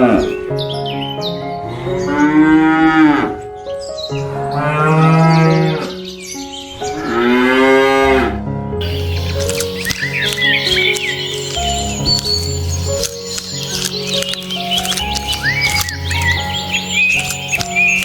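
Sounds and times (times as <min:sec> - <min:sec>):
cattle mooing: 0:00.0 - 0:00.5, 0:01.6 - 0:03.4.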